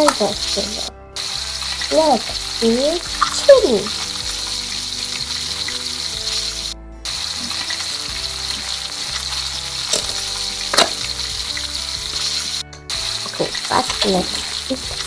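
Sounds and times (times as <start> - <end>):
frying sizzle: 0.0 - 15.0.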